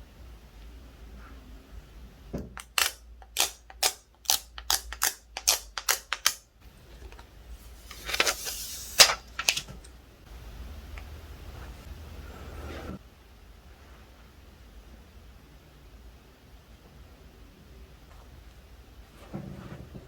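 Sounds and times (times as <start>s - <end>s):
plastic film rustling: 6.9s - 9.9s.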